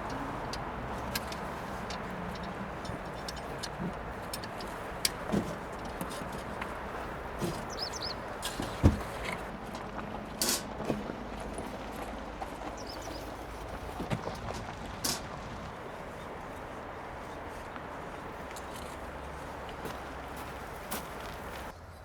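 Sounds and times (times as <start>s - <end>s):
clicks and knocks of handling: 0.0s - 15.7s
outdoor background rush: 0.0s - 22.0s
bird chirps: 7.0s - 8.3s, 12.6s - 13.4s.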